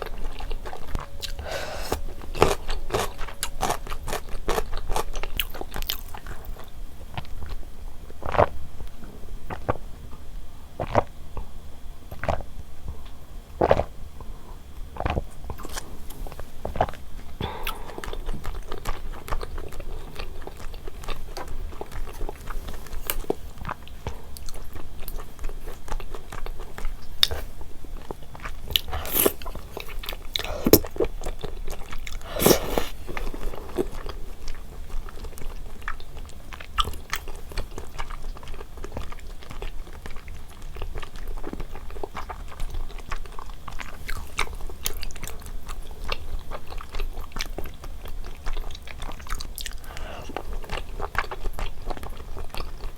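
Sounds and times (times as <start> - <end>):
chewing and biting food: 0.0 - 10.2, 10.8 - 52.9
wet mouth clicks: 32.0 - 33.8.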